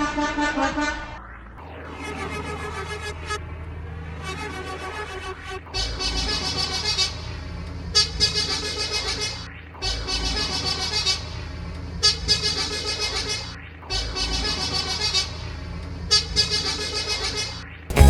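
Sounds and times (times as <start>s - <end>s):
horn-like tone blasts: 5.8s - 7.2s.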